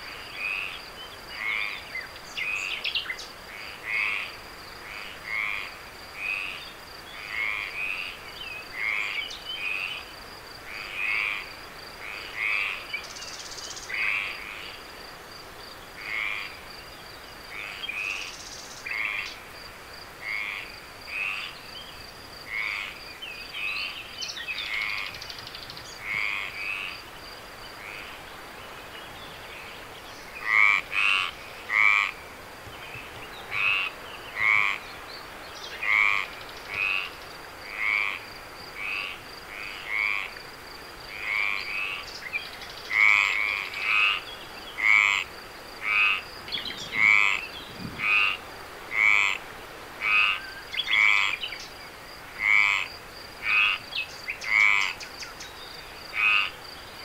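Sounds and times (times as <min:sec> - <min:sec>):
frog croaking: 0:01.4 - 0:01.8, 0:03.5 - 0:06.6, 0:07.2 - 0:10.1, 0:10.7 - 0:13.0, 0:13.9 - 0:14.8, 0:16.0 - 0:16.7, 0:17.4 - 0:19.4, 0:20.2 - 0:21.6, 0:22.4 - 0:23.0, 0:24.6 - 0:25.2, 0:26.0 - 0:27.1, 0:27.8 - 0:28.2, 0:30.4 - 0:32.3, 0:33.5 - 0:34.9, 0:35.8 - 0:40.4, 0:41.1 - 0:42.1, 0:42.9 - 0:51.5, 0:52.3 - 0:55.1, 0:56.0 - 0:56.8.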